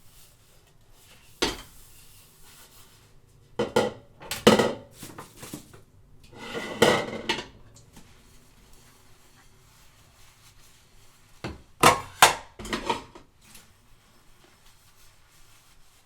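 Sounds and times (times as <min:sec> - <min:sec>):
dishes clattering and clinking: 0:01.4 - 0:01.8, 0:03.6 - 0:05.7, 0:06.3 - 0:07.9, 0:11.5 - 0:13.3.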